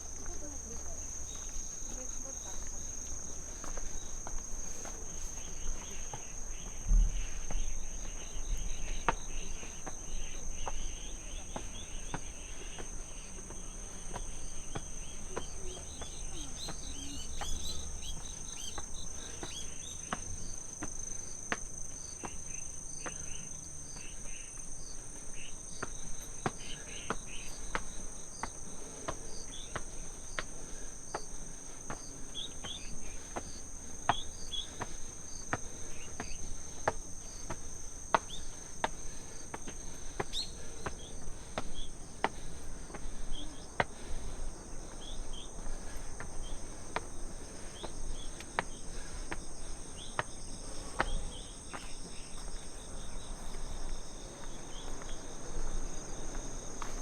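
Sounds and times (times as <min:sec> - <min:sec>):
crickets chirring: 0:00.0 - 0:57.0
low thump: 0:06.8 - 0:07.4.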